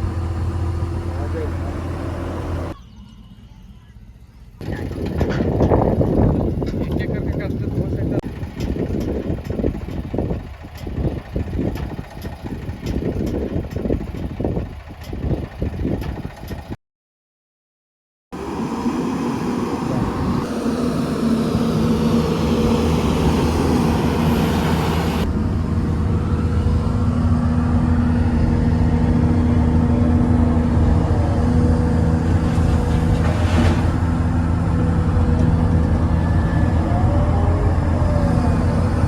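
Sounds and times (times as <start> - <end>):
heavy diesel machinery running: 0.0 - 16.8, 18.4 - 39.0.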